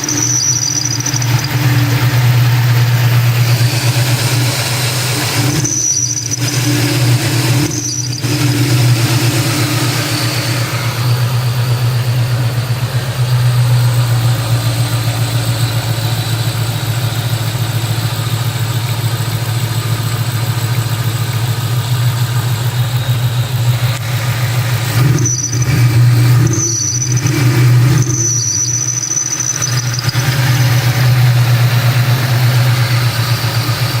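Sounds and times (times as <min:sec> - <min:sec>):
belt drive squealing: 0:00.0 - 0:17.4, 0:22.2 - 0:34.0
car engine running: 0:00.0 - 0:34.0.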